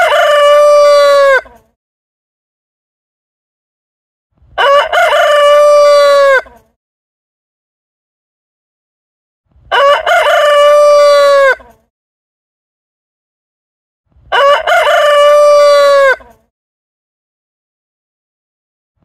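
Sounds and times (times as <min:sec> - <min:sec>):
rooster crowing: 0:00.0 - 0:01.5, 0:04.6 - 0:06.6, 0:09.7 - 0:11.7, 0:14.3 - 0:16.3.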